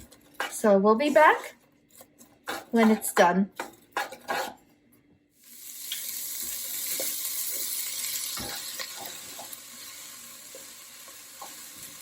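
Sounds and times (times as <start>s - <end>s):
spoon scraping a pot: 0.0s - 4.7s
aromatics sizzling in a pot: 5.3s - 12.0s.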